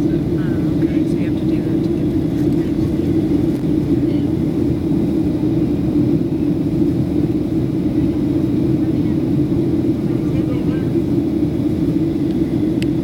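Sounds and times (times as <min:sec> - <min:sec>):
constant hum: 0:00.0 - 0:13.0
engines rumbling: 0:00.0 - 0:13.0.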